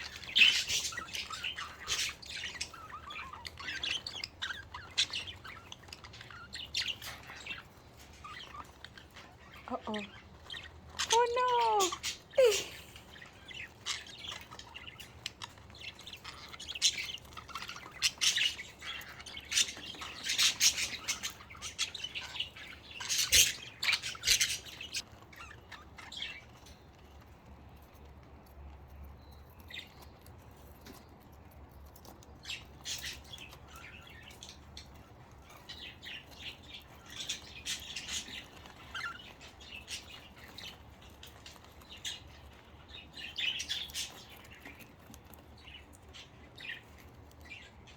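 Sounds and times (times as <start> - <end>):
budgerigars chirping and squawking: 0.0 - 47.9.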